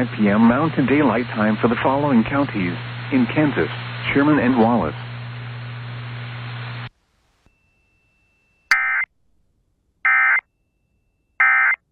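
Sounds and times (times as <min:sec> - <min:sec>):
radio receiver hiss: 0:00.0 - 0:07.5
low hum: 0:00.0 - 0:11.4.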